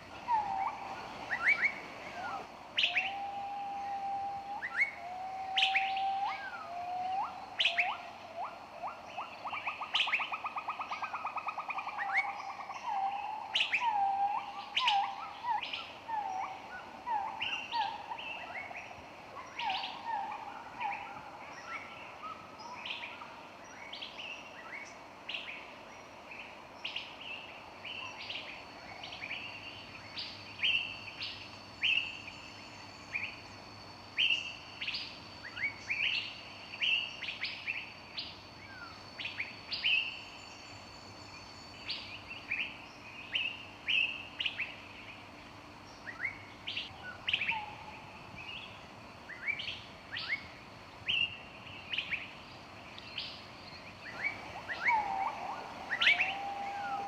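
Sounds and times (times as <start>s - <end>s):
birds chirping: 52.4s - 57.0s
low whistled bird notes: 54.0s - 57.0s.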